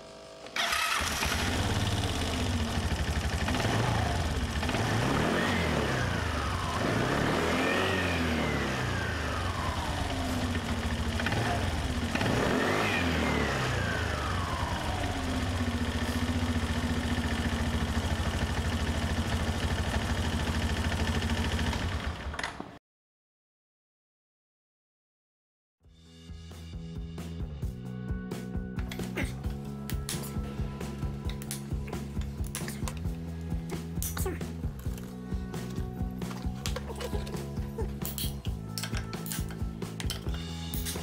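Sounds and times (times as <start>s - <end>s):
scooter engine revving and idling: 0.5s - 22.8s.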